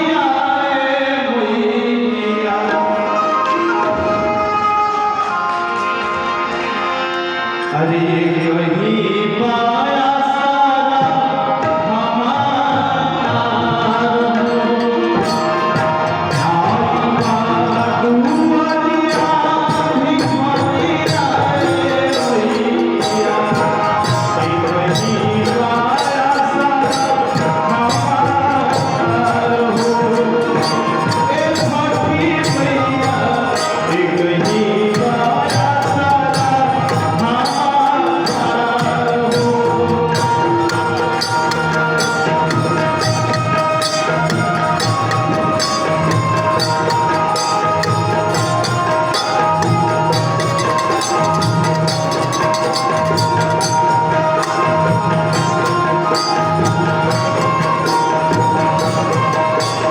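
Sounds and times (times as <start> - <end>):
instrumental melody: 2.6 - 8.9, 13.3 - 59.9
hand drums: 11.0 - 59.9
jingling percussion beat: 12.8 - 59.9.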